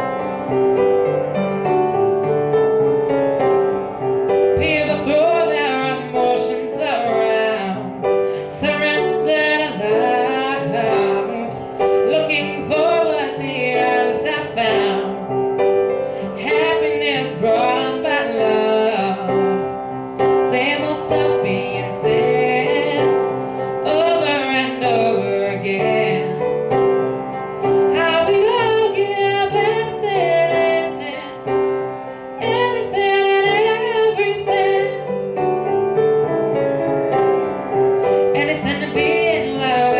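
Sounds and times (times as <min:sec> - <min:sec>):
piano chords: 0:00.0 - 0:39.9
woman singing pop ballad: 0:04.6 - 0:15.2, 0:16.3 - 0:19.6, 0:20.4 - 0:23.3, 0:23.9 - 0:26.4, 0:27.9 - 0:31.4, 0:32.4 - 0:35.1, 0:38.2 - 0:39.9.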